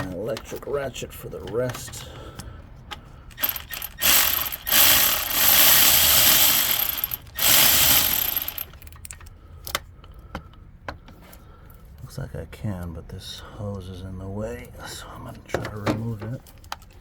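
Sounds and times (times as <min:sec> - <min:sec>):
electric ratchet running: 0:03.3 - 0:09.0.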